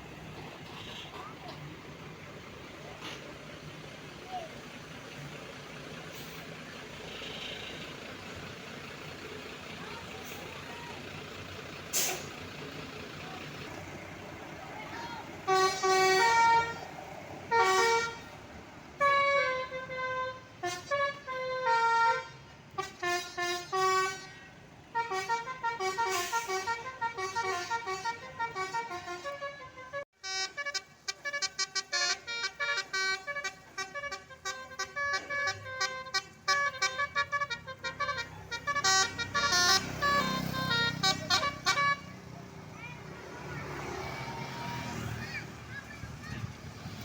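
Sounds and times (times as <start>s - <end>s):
bus horn playing melodic tunes: 7.0s - 8.1s, 14.4s - 42.3s.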